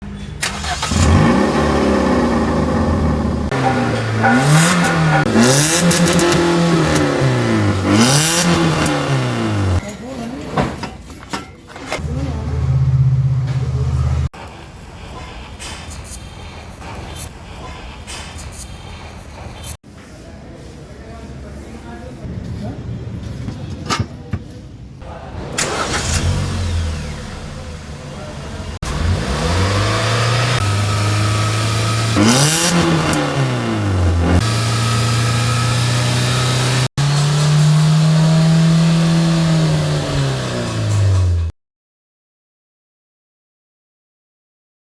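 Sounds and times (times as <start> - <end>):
car engine revving: 0.4 - 9.8, 12.0 - 14.3, 25.3 - 41.5
loud exhaust noise: 0.4 - 9.8, 12.0 - 15.1, 25.1 - 41.5.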